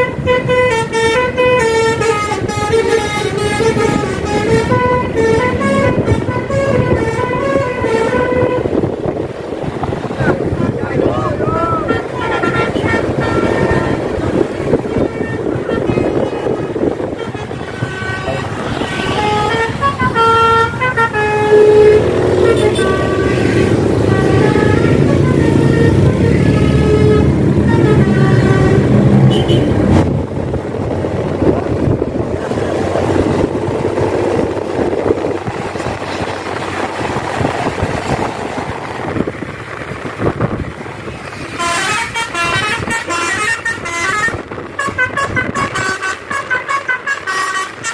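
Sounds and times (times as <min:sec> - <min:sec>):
bus musical horn melody: 0:00.0 - 0:09.1, 0:10.6 - 0:30.1, 0:41.3 - 0:47.9
road and wind noise: 0:00.0 - 0:47.9.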